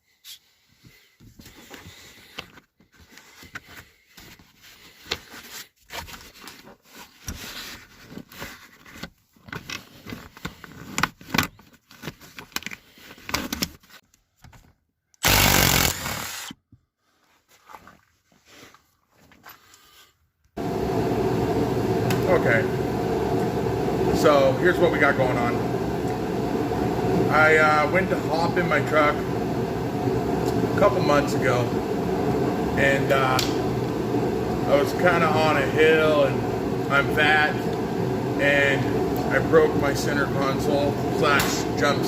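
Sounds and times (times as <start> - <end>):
loud burst of noise: 15.2 - 16.5.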